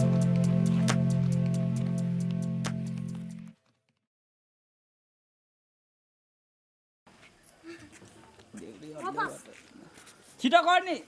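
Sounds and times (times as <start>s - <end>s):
background music with low tones: 0.0s - 3.5s.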